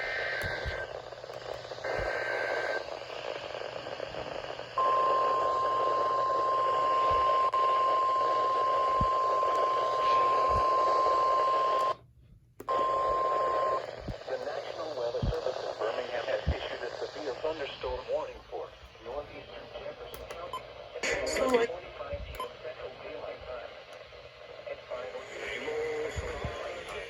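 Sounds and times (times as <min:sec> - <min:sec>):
static hiss: 0:00.0 - 0:11.9, 0:12.7 - 0:27.0
steady warning alarm tone: 0:04.8 - 0:12.0.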